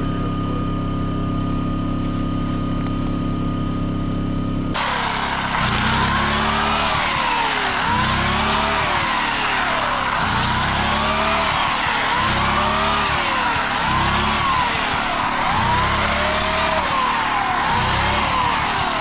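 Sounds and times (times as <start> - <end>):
string trimmer engine under load: 4.8 - 19.0.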